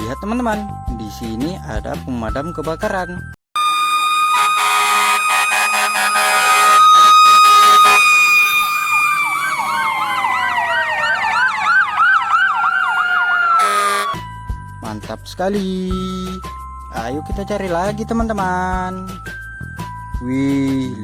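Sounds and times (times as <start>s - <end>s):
fire engine siren wailing: 3.6s - 14.2s.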